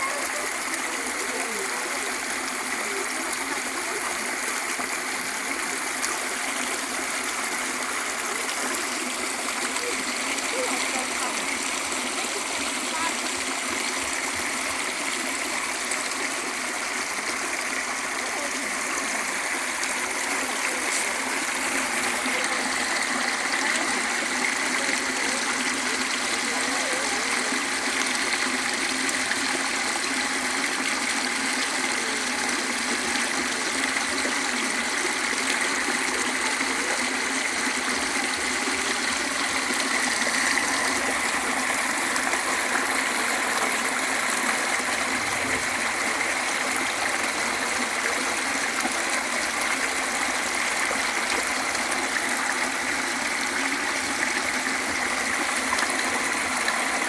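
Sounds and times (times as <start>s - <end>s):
river flowing: 0.2s - 57.0s.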